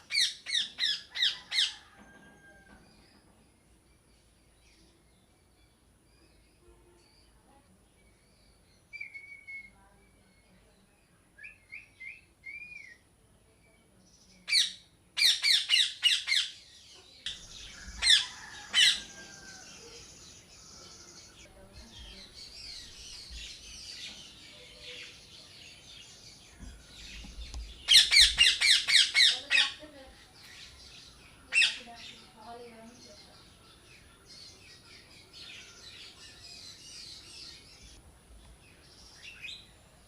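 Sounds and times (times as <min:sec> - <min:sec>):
parrots squawking: 0:00.0 - 0:01.8, 0:14.5 - 0:16.6, 0:17.6 - 0:19.6, 0:27.9 - 0:29.8, 0:31.5 - 0:31.8
parrots chattering: 0:00.0 - 0:01.9, 0:14.5 - 0:16.6, 0:17.3 - 0:20.2, 0:27.9 - 0:30.0, 0:31.4 - 0:32.3.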